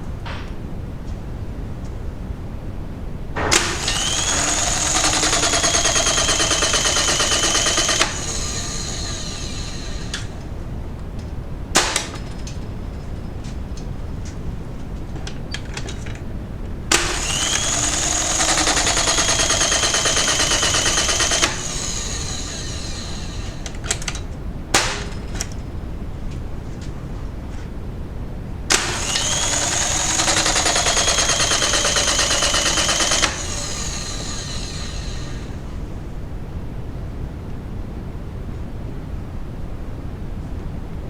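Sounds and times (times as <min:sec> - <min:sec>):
sharp mechanical clicks: 0:03.4 - 0:10.5, 0:16.9 - 0:25.6, 0:28.7 - 0:35.6
circuit breaker motor whirring: 0:03.4 - 0:10.7, 0:16.7 - 0:25.6, 0:28.7 - 0:35.9.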